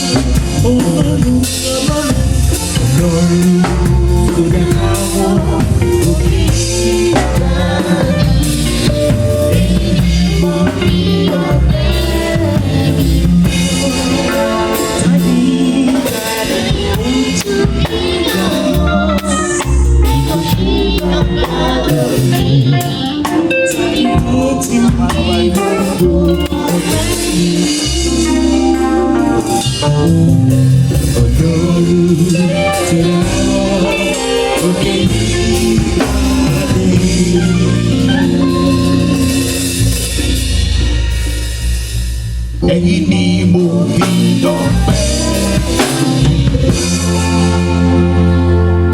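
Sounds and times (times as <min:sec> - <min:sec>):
gospel singing: 0:00.0 - 0:41.7, 0:42.6 - 0:48.9
drum kit beat: 0:00.0 - 0:48.9.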